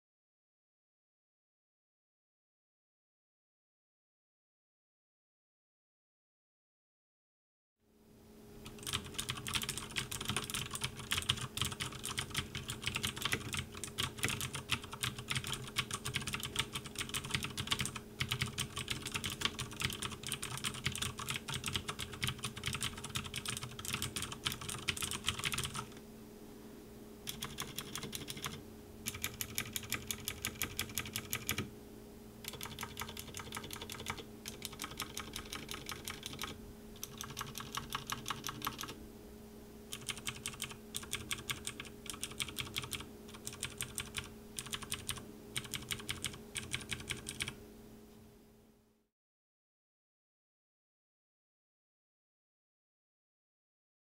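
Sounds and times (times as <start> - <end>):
faint steady hum: 7.8 - 49.1
clicky mechanical keyboard typing: 8.6 - 26.0, 27.3 - 31.7, 32.4 - 39.0, 39.9 - 47.6.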